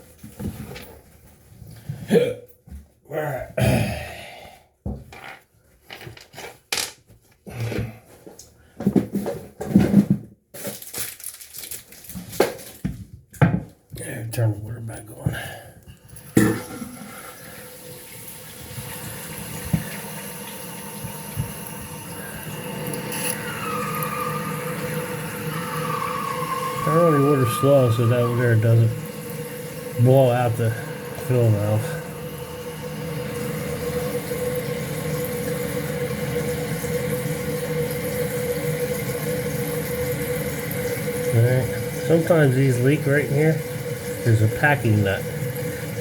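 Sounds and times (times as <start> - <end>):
fill valve whine: 16.2 - 46.0
toilet tank refilling hiss: 16.2 - 46.0.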